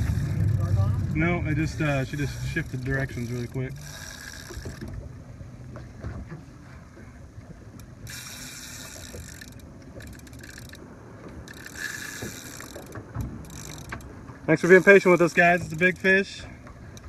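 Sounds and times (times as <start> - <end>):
fishing reel gears working: 0.0 - 0.9, 1.5 - 5.0, 7.7 - 17.0
reel drag buzzing: 0.0 - 17.0.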